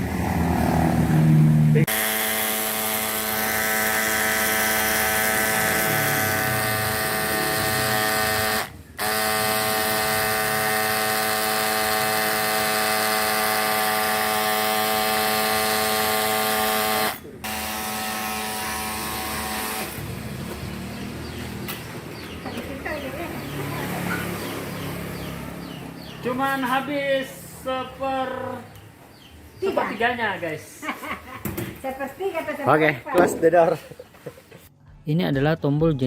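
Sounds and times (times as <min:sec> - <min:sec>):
water pump humming: 0:01.8 - 0:20.4.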